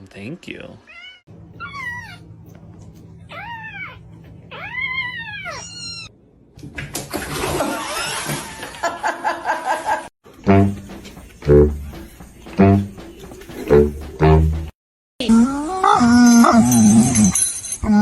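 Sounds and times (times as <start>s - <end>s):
cat meowing: 3.3s - 6.1s.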